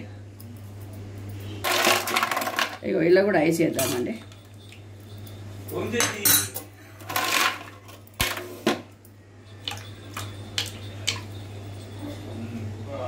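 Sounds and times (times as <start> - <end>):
ice cubes clinking in a glass: 1.6 - 2.8.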